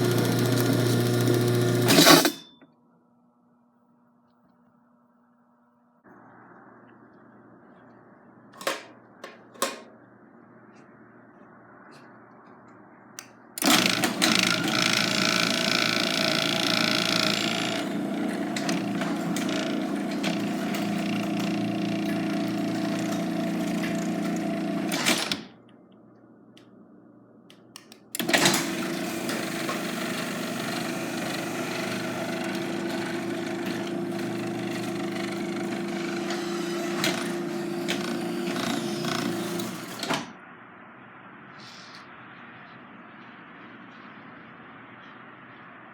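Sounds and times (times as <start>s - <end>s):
garage door opener motor humming: 0.0s - 2.6s, 13.2s - 25.6s, 27.9s - 40.5s.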